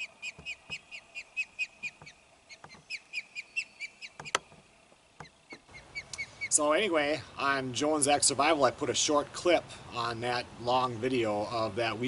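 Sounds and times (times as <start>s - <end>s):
bird whistled chirps: 0.0s - 4.4s.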